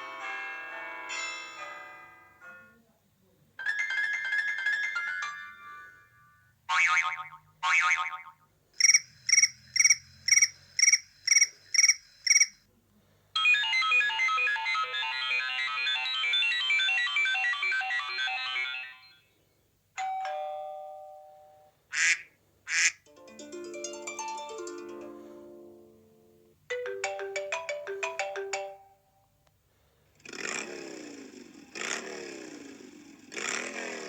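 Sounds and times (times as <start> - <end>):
ringing tone: 8.8 - 12.6
short chirps: 8.8 - 12.6.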